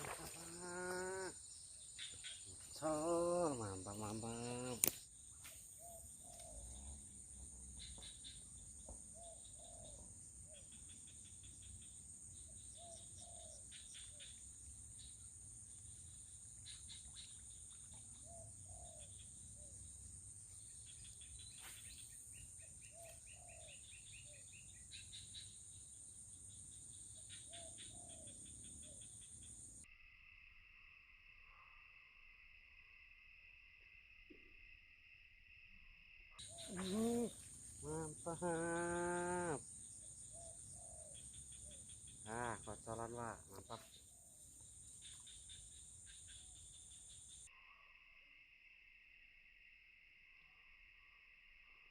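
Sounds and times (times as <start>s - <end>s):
high-pitched insect drone: 0.0s - 8.6s, 29.2s - 51.9s.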